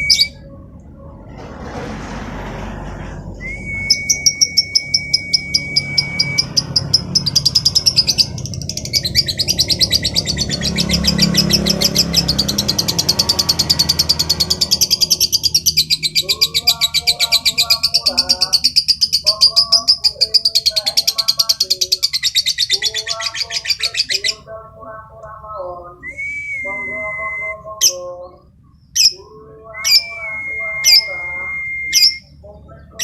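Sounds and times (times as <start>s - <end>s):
steady high whistle: 3.4s - 6.5s
bird rapid chattering song: 3.9s - 24.5s, 27.8s - 30.3s.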